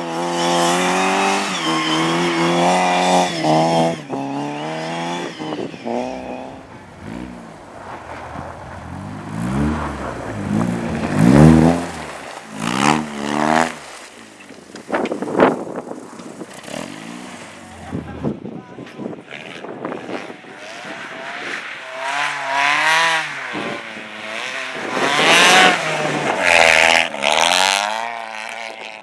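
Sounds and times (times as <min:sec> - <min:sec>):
car engine revving: 0:00.0 - 0:18.5
tyres squealing: 0:00.4 - 0:14.8.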